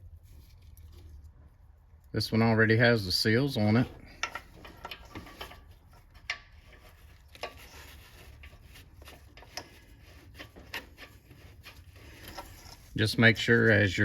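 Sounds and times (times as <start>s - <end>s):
light clicks and rubbing: 3.7s - 13.8s.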